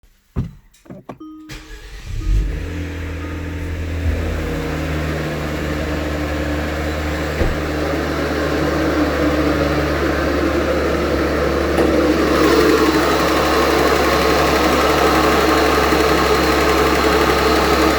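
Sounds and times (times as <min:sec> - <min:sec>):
car engine idling with ticking: 0:01.5 - 0:17.9
engine knock: 0:03.6 - 0:17.9.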